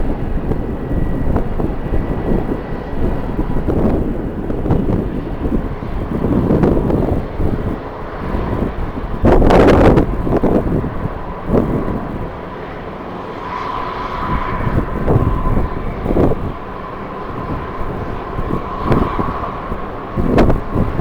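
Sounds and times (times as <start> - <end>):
jet engines whining: 0.0 - 21.0
wind gusting against microphone: 0.0 - 21.0.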